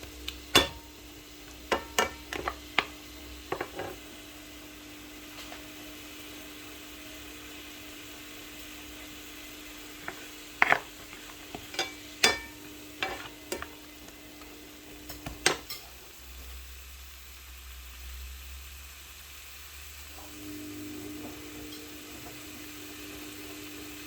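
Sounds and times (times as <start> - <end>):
light sizzling of frying: 0.0 - 24.0
spoon knocking against pan: 0.5 - 0.9, 1.6 - 4.0, 10.0 - 13.8.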